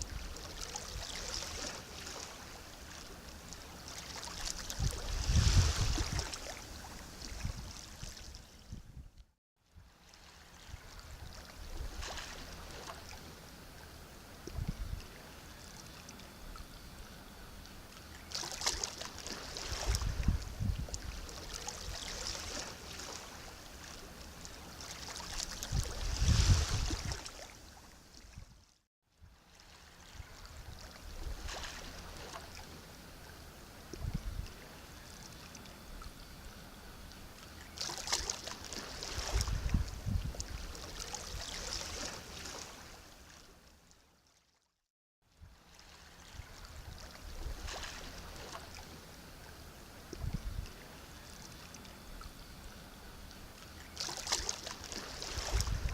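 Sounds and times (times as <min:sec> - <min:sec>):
sea waves washing in: 0:00.0 - 0:08.2, 0:18.3 - 0:28.2.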